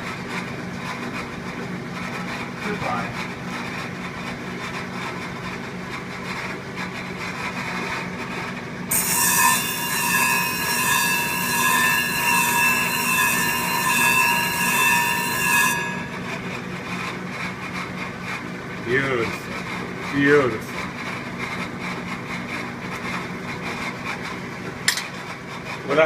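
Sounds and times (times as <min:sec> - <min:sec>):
sharpening machine motor humming: 0:08.9 - 0:24.3.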